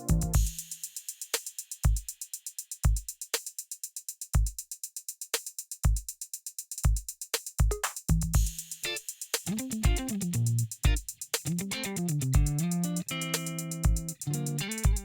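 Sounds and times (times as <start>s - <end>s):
kick drum: 0.0s - 0.7s, 1.8s - 2.2s, 2.8s - 3.2s, 4.3s - 4.7s, 5.8s - 6.2s, 6.8s - 8.7s, 9.8s - 10.2s, 10.8s - 11.2s, 12.3s - 12.8s, 13.8s - 14.2s
hi-hat ticks: 0.0s - 15.0s.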